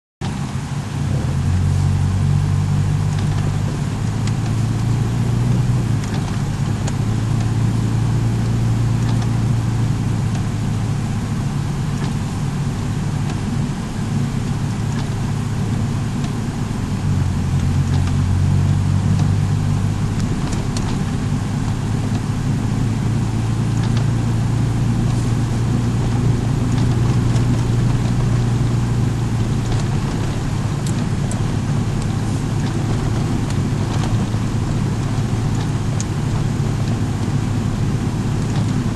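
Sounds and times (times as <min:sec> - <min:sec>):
car engine hum: 0:00.2 - 0:38.9
road noise rushing: 0:00.2 - 0:38.9.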